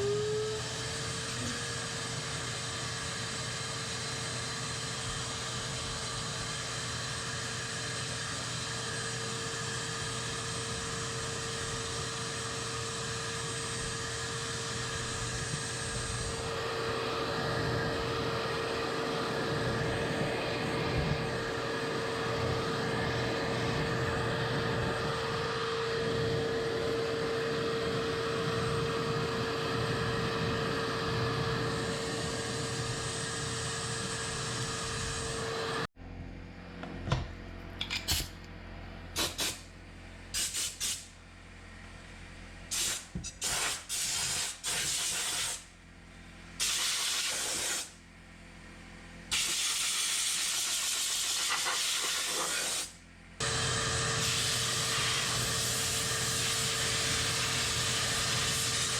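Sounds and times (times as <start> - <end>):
shop vacuum whining: 0.0 - 39.7, 49.2 - 58.9
air gun hissing blasts: 39.2 - 39.6, 40.3 - 41.1, 42.7 - 45.7, 46.6 - 48.0, 54.2 - 58.9.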